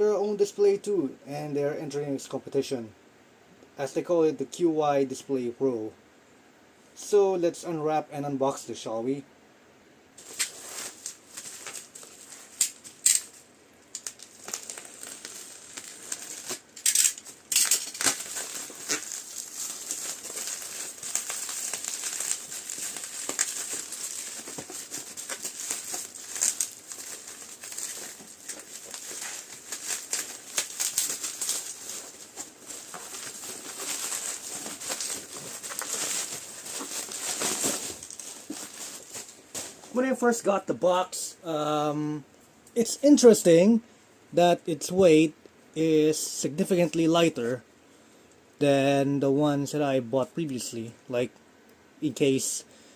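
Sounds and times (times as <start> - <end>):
packaging crinkling and tearing: 10.2 - 39.9.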